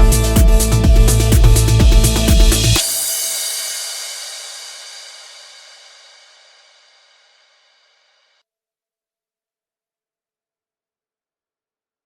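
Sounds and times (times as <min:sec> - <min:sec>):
electronic music with bass beat: 0:00.0 - 0:03.6
cymbal wash: 0:00.0 - 0:07.9.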